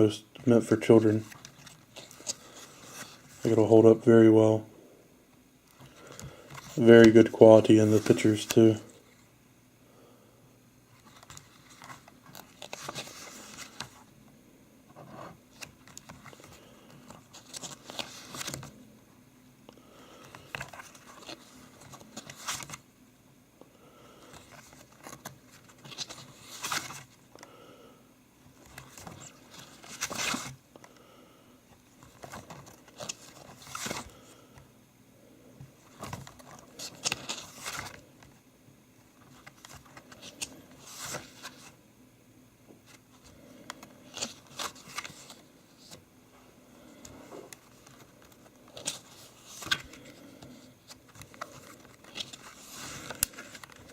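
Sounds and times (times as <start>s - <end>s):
book pages turning: 0.5s - 3.8s, 5.7s - 8.8s, 11.0s - 14.1s, 14.9s - 18.8s, 20.0s - 22.8s, 24.2s - 27.5s, 28.5s - 31.0s, 31.8s - 34.6s, 35.7s - 38.4s, 39.2s - 41.8s, 42.8s - 46.0s, 46.8s - 53.9s.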